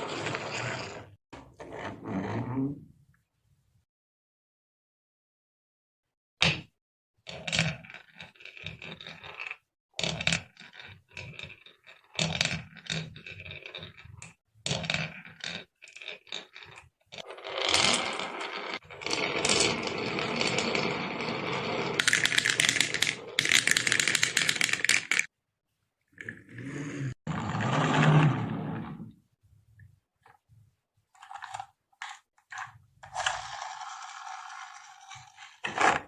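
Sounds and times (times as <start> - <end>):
marbles rolling and clattering: 7.3 - 25.3, 31.2 - 35.7.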